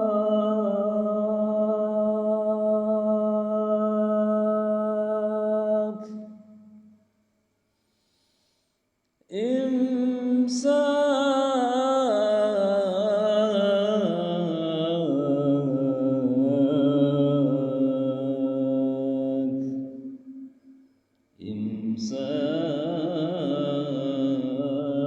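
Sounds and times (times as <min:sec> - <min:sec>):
man chanting: 0:09.3 - 0:20.0, 0:21.4 - 0:25.0.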